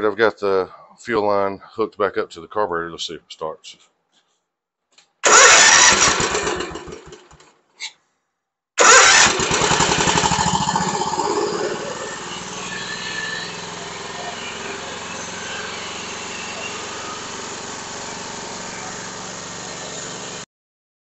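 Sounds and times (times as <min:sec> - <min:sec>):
mower engine starting and running: 0:05.2 - 0:07.5, 0:08.8 - 0:20.5.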